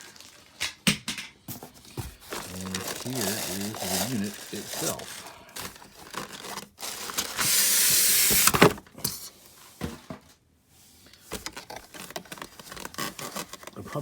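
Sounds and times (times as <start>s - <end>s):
packing material rustling: 0.0s - 0.6s, 1.6s - 8.9s, 11.3s - 14.0s
cardboard packaging scraping: 1.5s - 8.9s, 11.0s - 14.0s.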